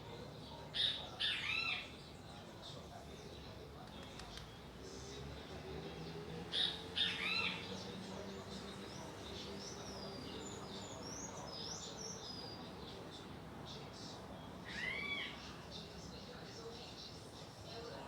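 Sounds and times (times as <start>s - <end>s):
small birds chirping: 0.2s - 18.0s.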